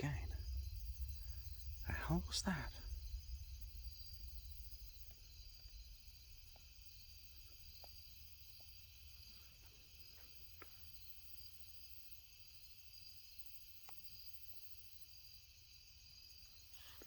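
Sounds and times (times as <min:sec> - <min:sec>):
low rumble: 0:00.0 - 0:08.6
night insects trilling: 0:00.0 - 0:17.0
faint ticks: 0:13.4 - 0:14.9.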